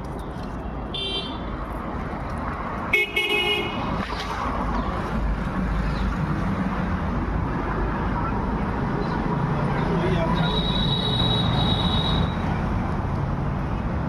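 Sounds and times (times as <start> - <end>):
traffic noise: 0.0 - 14.0
vehicle horn honking: 1.0 - 1.4, 2.9 - 3.8, 10.4 - 12.4.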